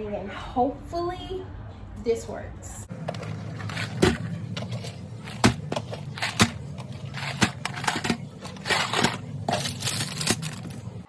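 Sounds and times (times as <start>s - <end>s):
low steady hum: 0.0s - 11.0s
packages rustling and scraping: 2.9s - 11.0s.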